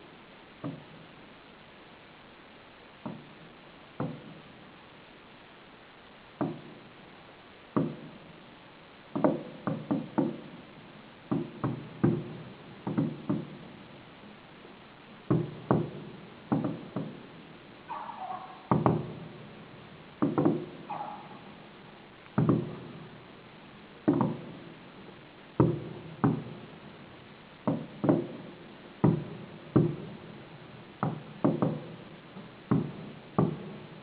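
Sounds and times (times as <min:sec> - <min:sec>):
fireworks bangs with rumbling tails: 0:09.2 - 0:14.0, 0:15.2 - 0:17.8, 0:18.6 - 0:34.0.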